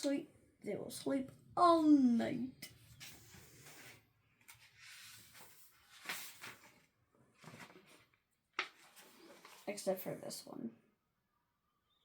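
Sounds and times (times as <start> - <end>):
book pages rustling: 3.0 - 9.9.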